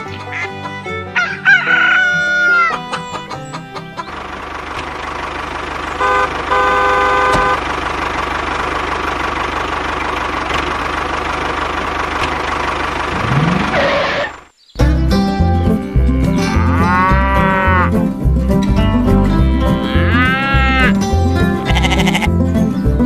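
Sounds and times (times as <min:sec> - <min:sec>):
tractor engine chugging: 0:02.6 - 0:14.3, 0:20.1 - 0:23.0
horn tooting: 0:05.9 - 0:07.7, 0:19.3 - 0:21.0.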